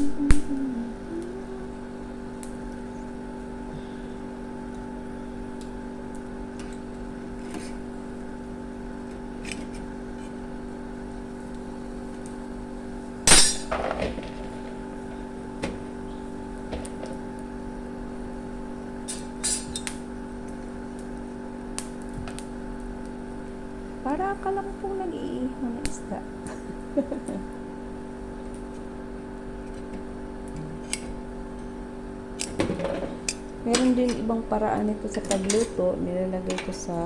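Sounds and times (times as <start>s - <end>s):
steady hum: 0.0s - 37.0s
loud cookware clatter: 13.3s - 14.5s, 35.1s - 35.8s.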